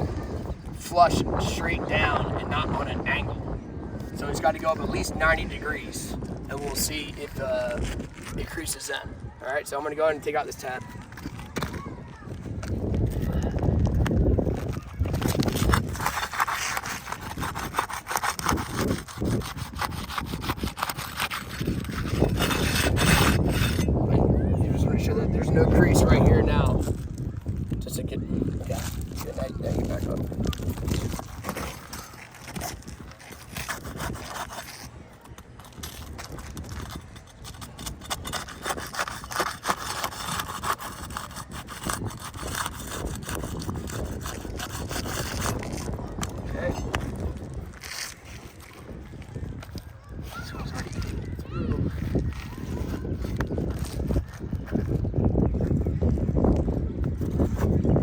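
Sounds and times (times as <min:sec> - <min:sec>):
tool scraping under shingle: 0:04.0 - 0:08.9, 0:10.2 - 0:27.9, 0:28.5 - 0:49.9.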